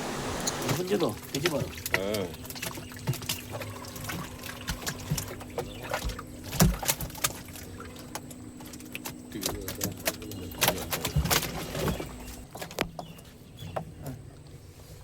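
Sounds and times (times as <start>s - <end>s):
steady low hum: 0.0s - 15.0s
water sounds: 0.0s - 15.0s
faint voices: 9.3s - 12.0s.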